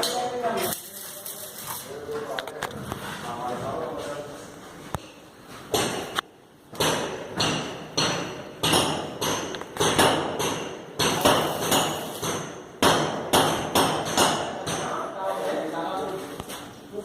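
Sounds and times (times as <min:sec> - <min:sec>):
hammer blows ringing: 0:06.8 - 0:15.0.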